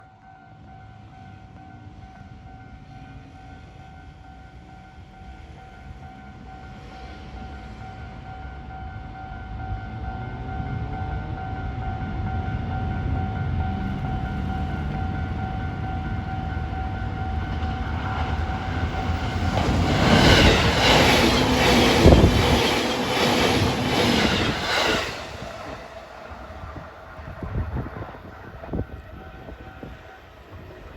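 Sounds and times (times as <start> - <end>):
level-crossing warning bell: 0.0 - 27.4
electric train rumbling past: 0.0 - 30.9
wheels clacking over rail joints: 13.8 - 26.5.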